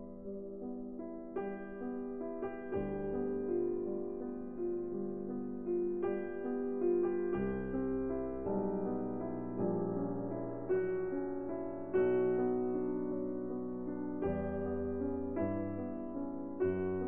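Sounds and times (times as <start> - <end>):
soft piano music: 0.0 - 17.0.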